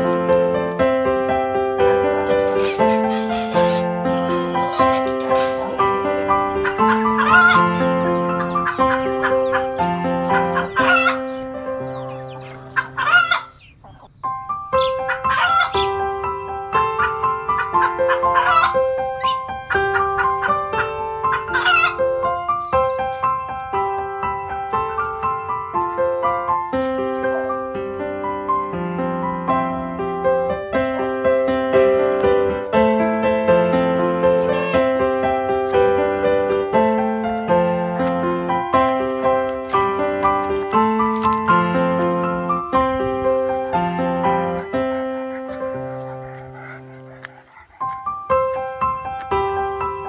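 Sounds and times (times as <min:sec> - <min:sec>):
background music: 0:00.0 - 0:13.8, 0:14.5 - 0:50.0
chickens calling: 0:00.0 - 0:27.9, 0:28.5 - 0:50.0.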